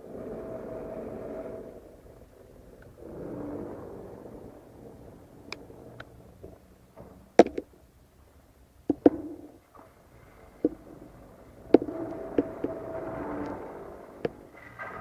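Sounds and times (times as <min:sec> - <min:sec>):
droning hum with steady tones: 0:00.0 - 0:15.0.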